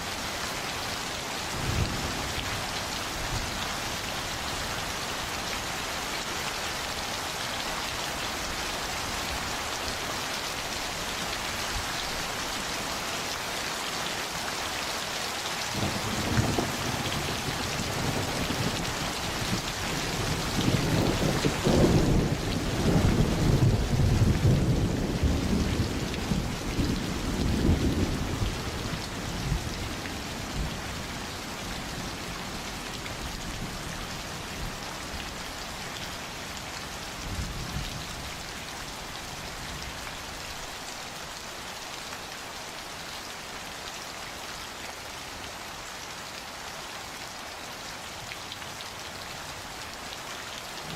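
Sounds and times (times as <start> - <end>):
steady rain falling: 0.0 - 50.9
thunder rumbling: 15.8 - 29.6.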